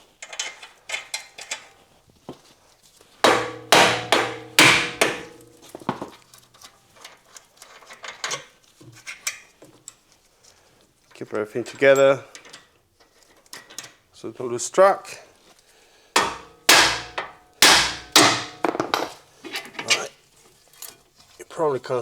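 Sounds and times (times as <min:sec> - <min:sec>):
hammer striking steel: 0:03.2 - 0:06.1, 0:16.2 - 0:19.2
metal clinks and taps: 0:03.2 - 0:06.1, 0:16.2 - 0:19.2.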